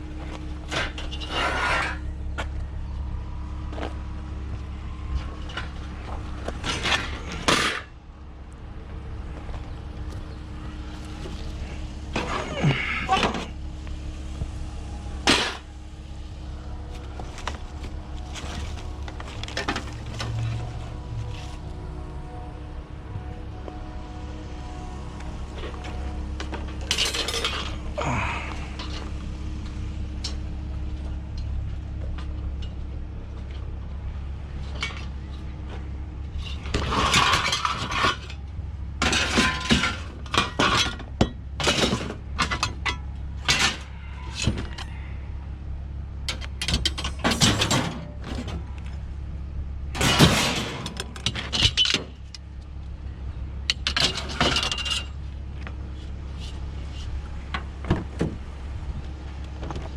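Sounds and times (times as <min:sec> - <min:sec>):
steady low hum: 0:00.0 - 0:59.9
hard objects clattering and clinking: 0:36.5 - 0:38.4, 0:39.0 - 0:44.8.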